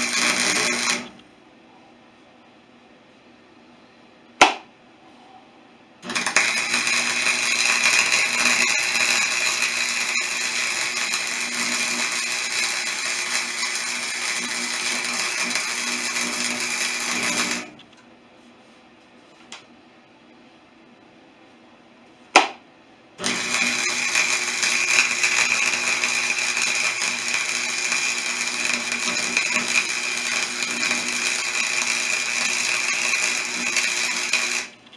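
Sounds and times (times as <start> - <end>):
power tool whining: 0.0 - 1.2, 6.0 - 17.8, 23.2 - 34.8.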